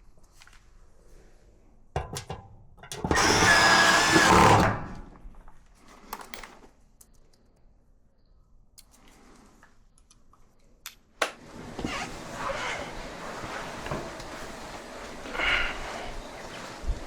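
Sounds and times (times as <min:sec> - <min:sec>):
small motor whirring: 0:03.1 - 0:04.7.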